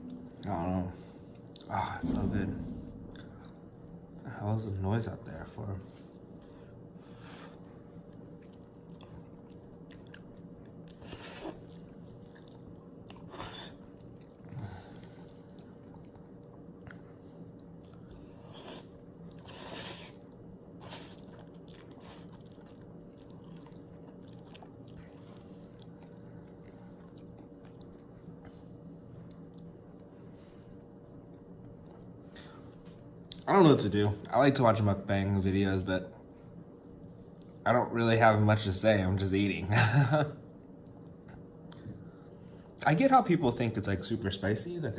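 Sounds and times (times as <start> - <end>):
faint hum: 0.0 - 44.9
person chewing noodles: 7.4 - 33.4.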